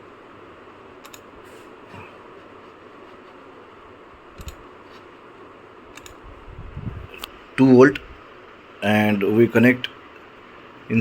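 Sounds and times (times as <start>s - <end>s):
sharp light clicks: 1.0s - 1.3s, 5.9s - 6.2s.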